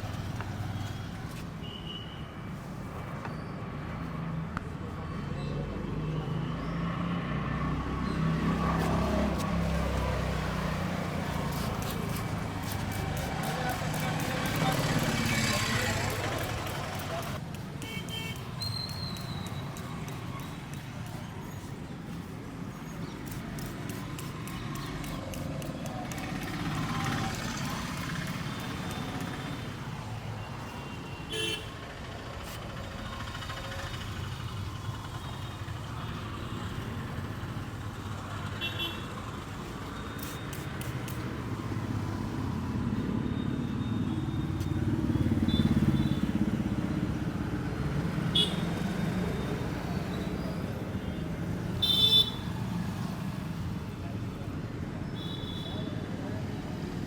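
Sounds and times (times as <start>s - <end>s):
motorbikes and cars passing: 0.0s - 1.5s, 3.6s - 55.3s.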